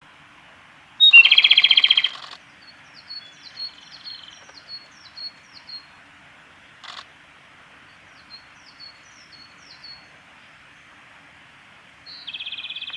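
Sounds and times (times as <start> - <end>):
robin singing rattling trill: 1.0 - 5.9, 12.1 - 12.9.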